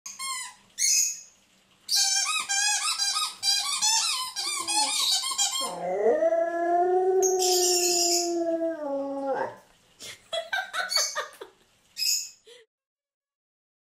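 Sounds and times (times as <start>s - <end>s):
dog squeaky whines: 2.0s - 5.8s
dog howling: 5.6s - 9.6s.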